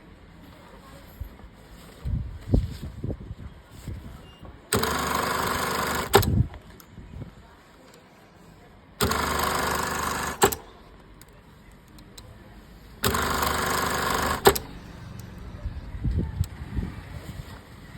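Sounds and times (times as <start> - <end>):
sewing machine sharp click: 4.7 - 6.4, 9.0 - 10.6, 13.0 - 14.8
sewing machine stitching: 4.7 - 6.4, 9.0 - 10.6, 13.0 - 15.3.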